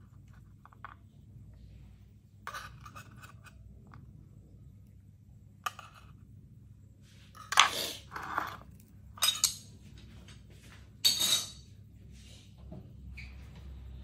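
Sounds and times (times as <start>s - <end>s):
low steady hum: 0.0s - 14.0s
kitchen scrapes: 7.0s - 8.7s.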